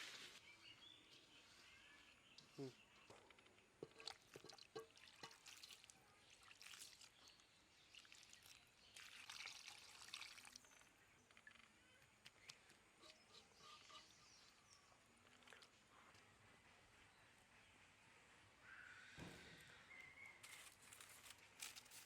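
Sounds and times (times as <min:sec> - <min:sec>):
liquid pouring: 0:08.0 - 0:10.7.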